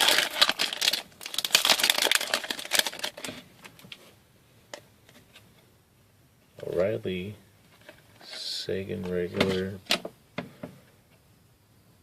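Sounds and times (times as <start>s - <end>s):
foil wrapper tearing and crinkling: 0.0s - 3.3s.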